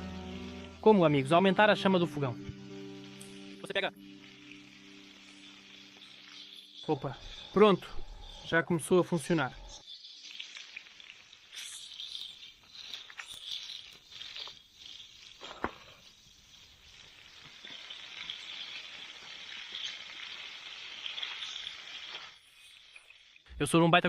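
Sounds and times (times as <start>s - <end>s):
food sizzling in oil: 0.0s - 23.6s.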